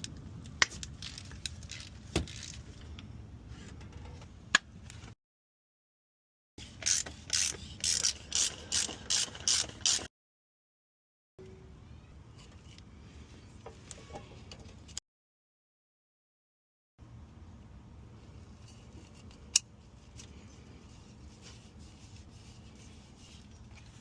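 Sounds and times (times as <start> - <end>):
ratchet wrench clicking: 6.8 - 10.1.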